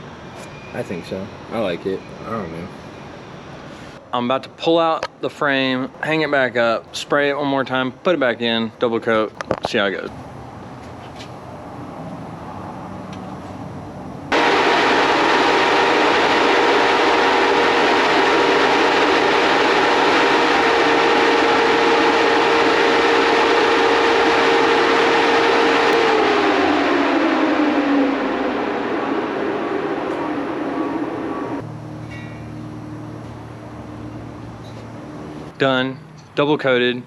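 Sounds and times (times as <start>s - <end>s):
steady hum: 14.2s - 35.6s.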